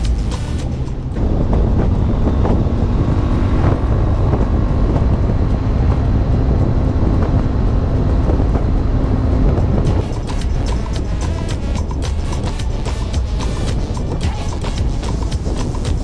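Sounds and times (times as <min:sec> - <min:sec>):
motorcycle engine running: 0:00.0 - 0:16.0
wind noise on microphone: 0:00.0 - 0:16.0.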